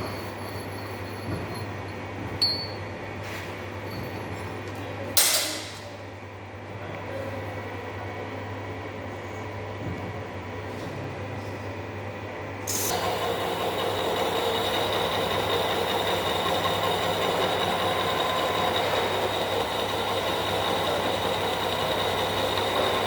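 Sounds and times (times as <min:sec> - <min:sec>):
machining noise with high whine: 0:12.6 - 0:23.0
lathe motor hum: 0:12.7 - 0:23.0.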